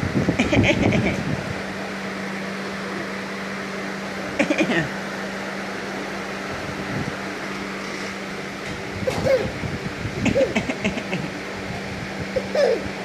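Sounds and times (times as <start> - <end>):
steady mechanical hum: 0.0 - 13.0
child imitating a cough: 9.1 - 9.5.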